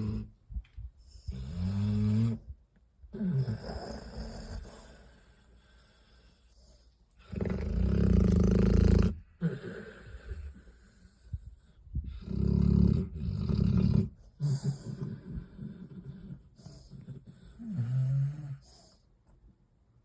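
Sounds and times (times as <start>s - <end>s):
dog snoring: 0.0s - 0.3s, 1.1s - 6.6s, 7.2s - 19.0s
dog breathing raggedly: 9.6s - 19.1s.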